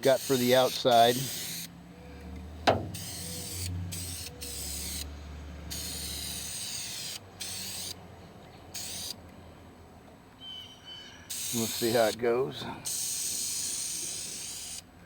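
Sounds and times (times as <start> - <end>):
aerosol spray can hissing: 13.0 - 14.8.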